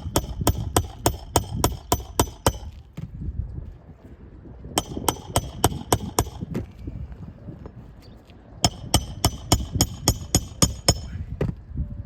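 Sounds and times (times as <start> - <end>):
hammer striking shingle roof: 0.0 - 2.8, 4.8 - 6.6, 8.7 - 11.2.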